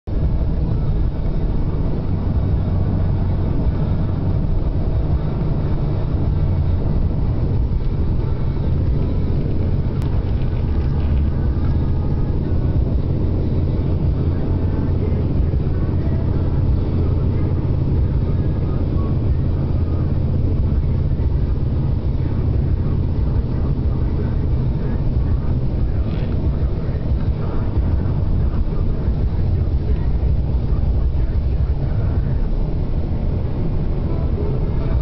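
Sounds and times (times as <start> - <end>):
blizzard wind buffeting microphone: 0.1 - 35.0.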